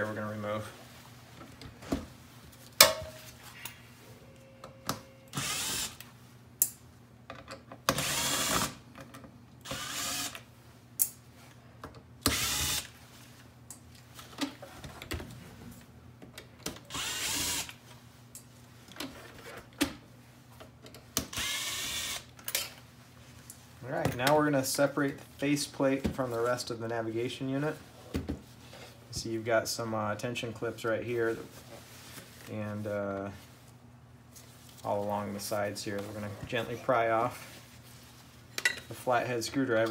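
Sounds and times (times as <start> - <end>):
power drill motor whirring: 5.3 - 6.0, 7.9 - 8.8, 9.6 - 10.4, 12.2 - 12.9, 16.9 - 17.8, 21.3 - 22.3.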